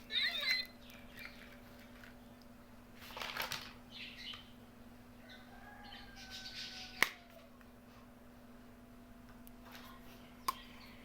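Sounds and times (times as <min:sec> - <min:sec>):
plastic pieces rustling and scraping: 0:03.0 - 0:03.8.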